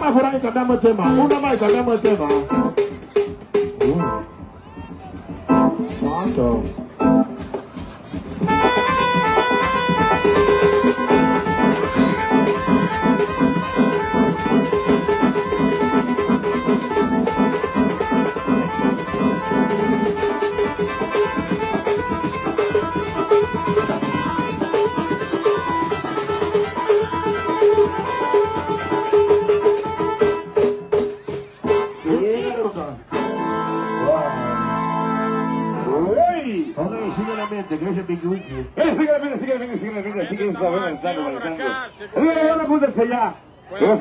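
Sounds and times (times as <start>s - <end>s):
loud party music with beat: 0.0s - 34.6s.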